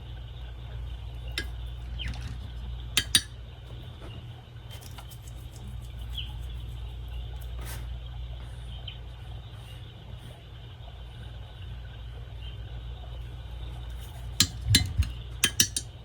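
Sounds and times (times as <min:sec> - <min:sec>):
steady low hum: 0:00.0 - 0:16.0
painting tools clinking: 0:03.0 - 0:03.3, 0:13.9 - 0:15.9.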